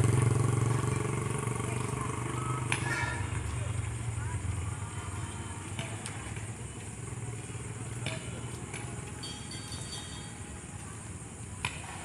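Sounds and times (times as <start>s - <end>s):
low engine-like rumble: 0.0s - 12.0s.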